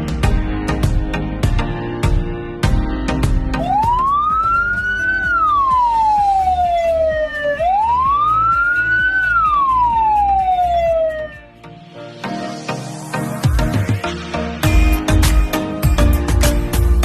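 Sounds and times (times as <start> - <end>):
background music: 0.0 - 17.0
ambulance siren wailing: 3.5 - 11.5.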